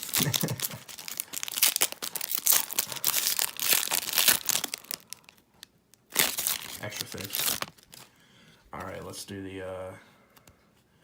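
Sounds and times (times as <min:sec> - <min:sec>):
plastic wrapper crinkling: 0:00.0 - 0:08.1.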